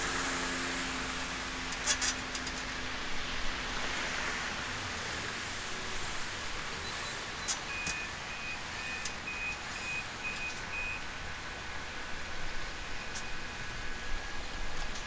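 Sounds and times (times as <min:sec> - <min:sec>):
parking sensor short high beeps: 0:06.8 - 0:11.2.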